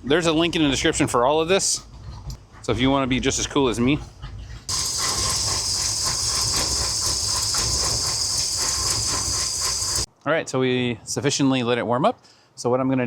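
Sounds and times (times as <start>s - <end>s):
engine idling with hiss: 4.7s - 10.1s.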